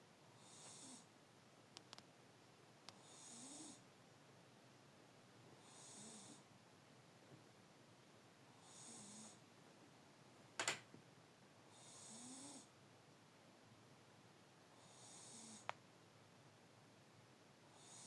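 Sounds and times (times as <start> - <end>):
pet snoring softly: 0.4 - 1.1, 2.9 - 3.8, 5.6 - 6.5, 8.5 - 9.4, 11.7 - 12.8, 14.7 - 15.8, 17.7 - 18.0.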